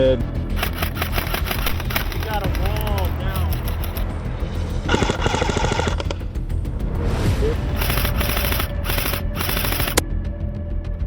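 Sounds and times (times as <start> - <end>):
background music: 0.0 - 11.0
airsoft guns firing full-auto bursts: 0.5 - 4.1, 4.9 - 6.2, 7.7 - 10.0.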